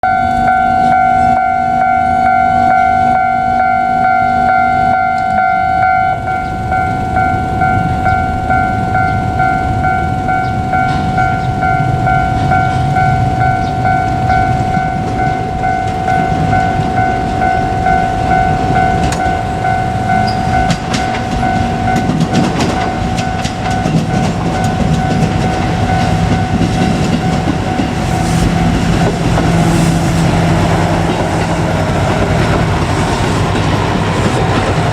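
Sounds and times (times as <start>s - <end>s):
level crossing alarm ringing: 0.0s - 34.9s
train rumble: 0.1s - 34.9s
wheels clacking over rail joints: 7.2s - 34.9s.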